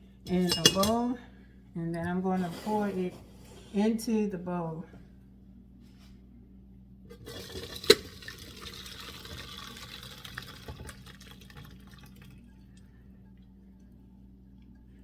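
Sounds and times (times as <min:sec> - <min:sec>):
water pouring through strainer: 0:07.2 - 0:12.5.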